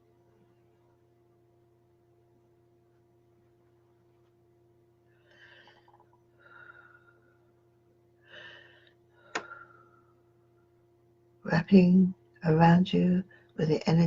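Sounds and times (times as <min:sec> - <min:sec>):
low steady hum: 0:00.0 - 0:14.0
faint breaths: 0:05.1 - 0:07.5, 0:08.2 - 0:10.3.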